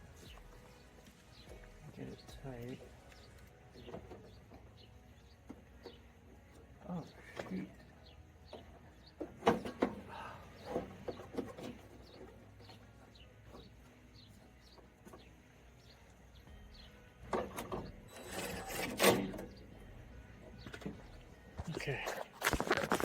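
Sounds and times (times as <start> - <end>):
car window glass winding: 17.4 - 19.6.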